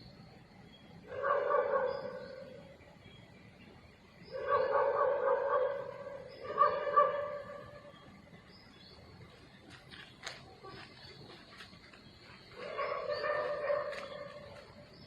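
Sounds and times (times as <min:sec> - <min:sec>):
dog barking: 0:01.1 - 0:02.4, 0:04.3 - 0:07.7, 0:12.6 - 0:14.5.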